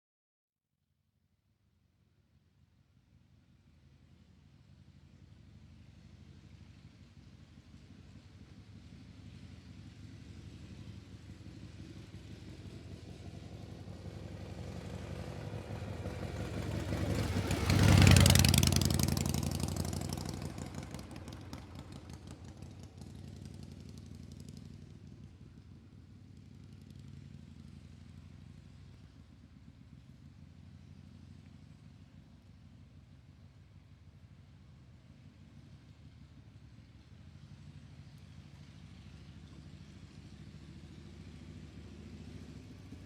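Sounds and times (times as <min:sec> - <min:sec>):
vehicle driving past: 0:09.0 - 0:29.0, 0:36.9 - 0:43.0.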